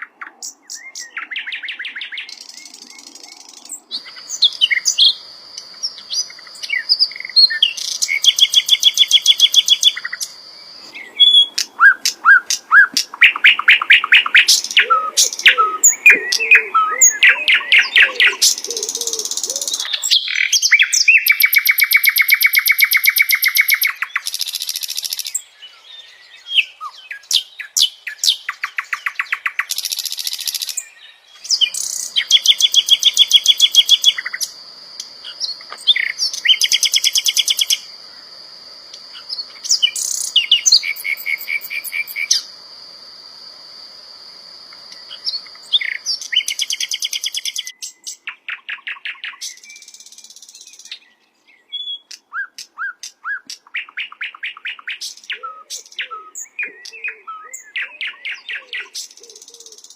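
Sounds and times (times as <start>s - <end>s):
flycatcher singing: 0.0s - 42.6s, 44.7s - 59.9s.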